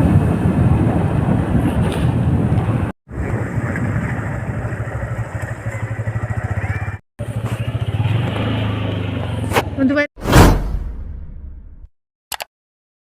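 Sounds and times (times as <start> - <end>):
motorcycle engine running: 3.1 - 9.5.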